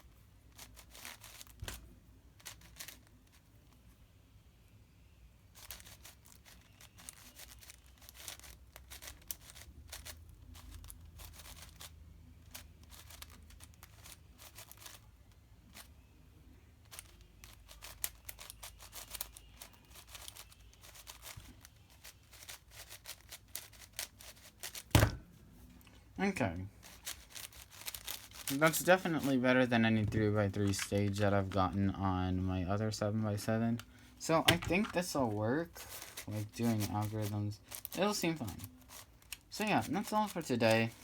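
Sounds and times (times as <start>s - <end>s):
puzzle cube clicking: 16.9s - 21.4s.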